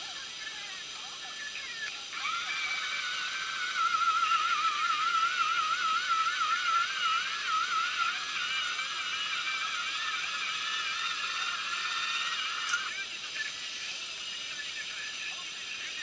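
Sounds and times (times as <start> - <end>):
thin radio music with vibrato: 0.0 - 16.0.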